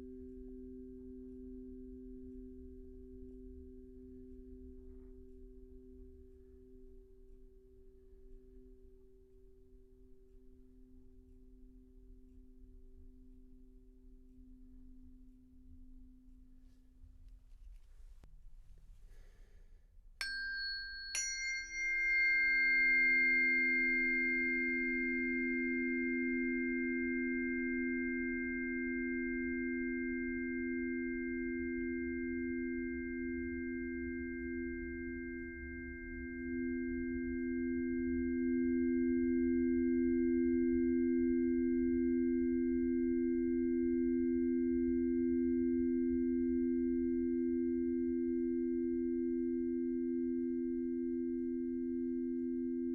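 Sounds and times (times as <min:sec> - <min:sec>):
singing bowl struck: 0:20.2 - 0:31.5
singing bowl drone: 0:20.2 - 0:52.9.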